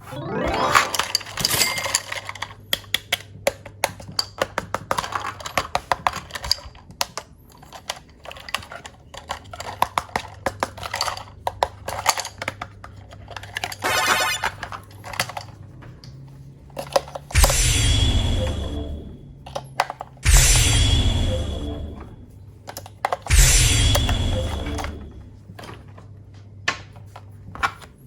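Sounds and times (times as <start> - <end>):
plastic toy parts clicking: 0.8 - 13.8, 14.5 - 15.6, 16.8 - 17.4.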